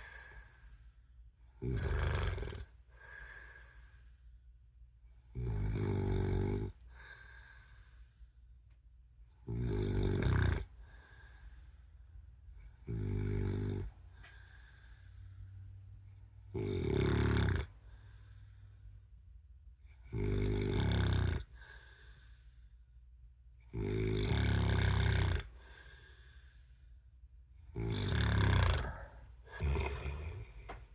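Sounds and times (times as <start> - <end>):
man snoring: 1.5 - 2.7, 5.3 - 6.8, 9.5 - 10.7, 12.8 - 14.0, 16.5 - 17.7, 20.0 - 21.6, 23.7 - 25.9, 27.7 - 30.9.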